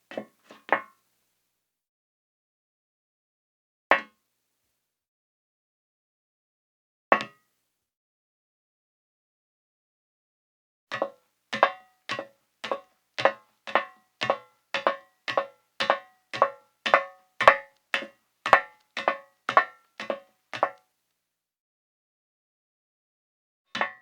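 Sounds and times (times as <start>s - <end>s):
high heels walking on metal: 10.9s - 20.8s.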